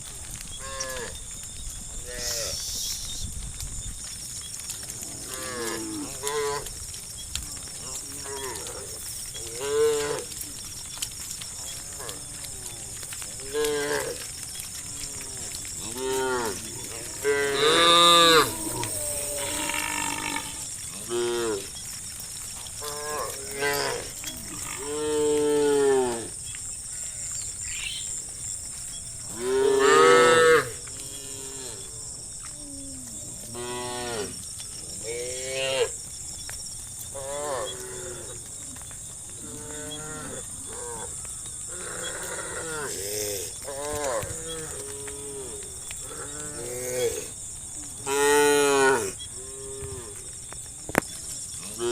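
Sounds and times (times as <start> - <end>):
cows mooing: 15.0 - 21.7, 29.2 - 31.9
steady high hiss: 26.0 - 32.0.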